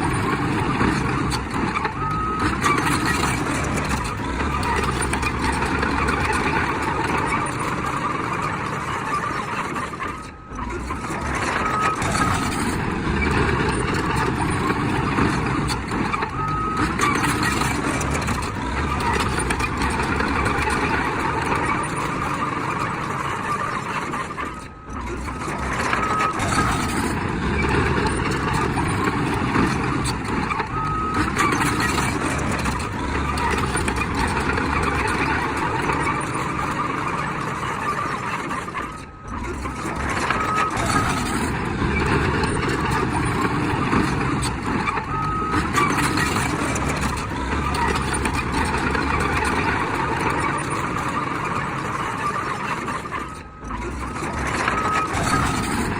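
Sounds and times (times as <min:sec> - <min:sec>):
heavy machinery running under load: 0:00.0 - 0:55.9
reversing alarm beeps: 0:00.1 - 0:04.0, 0:09.8 - 0:15.6, 0:16.2 - 0:18.2, 0:24.5 - 0:27.2, 0:30.4 - 0:34.5, 0:45.0 - 0:47.2.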